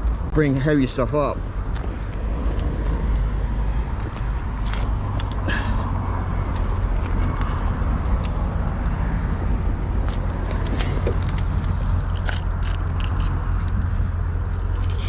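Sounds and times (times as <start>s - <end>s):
low outdoor rumble: 0.0s - 15.0s
metal clicks and scrapes: 10.4s - 15.0s.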